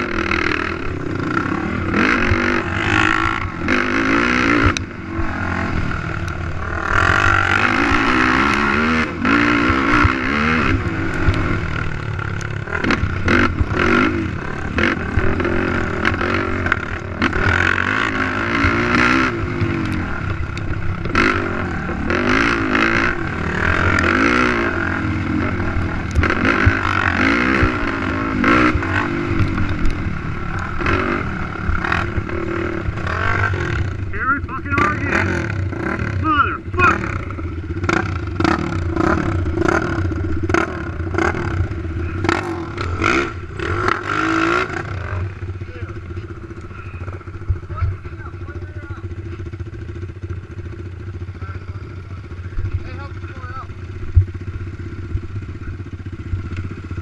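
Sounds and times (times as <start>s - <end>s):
atv engine revving: 0.0s - 57.0s.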